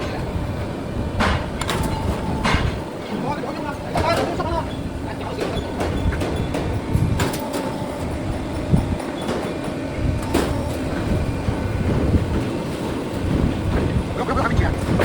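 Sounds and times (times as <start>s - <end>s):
low machine rumble: 0.0s - 15.0s
sharp metallic knocks: 1.2s - 3.0s, 3.9s - 12.4s.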